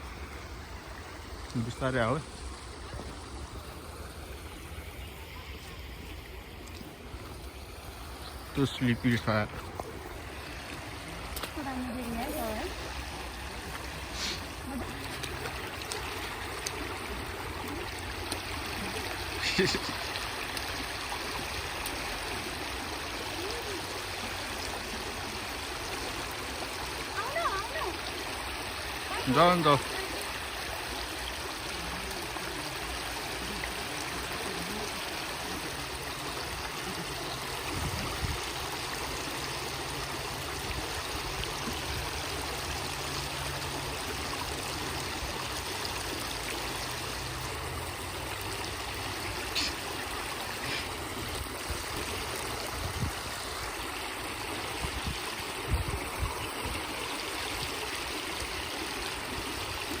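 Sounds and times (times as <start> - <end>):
river water flowing over stones: 0.0 - 60.0.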